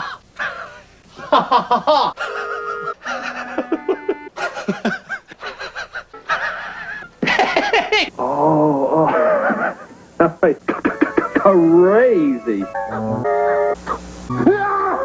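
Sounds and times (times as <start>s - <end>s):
man's wheezing laugh: 0.4s - 8.1s, 9.1s - 9.9s, 10.7s - 11.6s.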